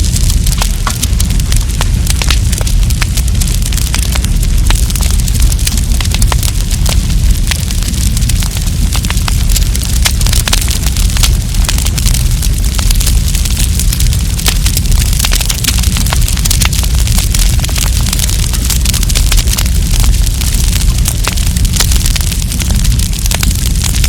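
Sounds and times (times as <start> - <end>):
campfire crackles and pops: 0.0 - 24.0
fire low rumble: 0.0 - 24.0.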